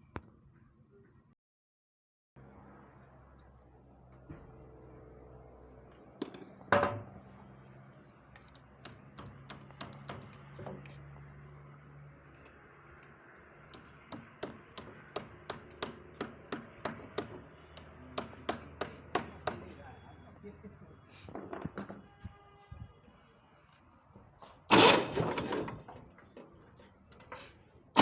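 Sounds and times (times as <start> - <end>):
sharp knocks and taps: 13.8 - 19.7.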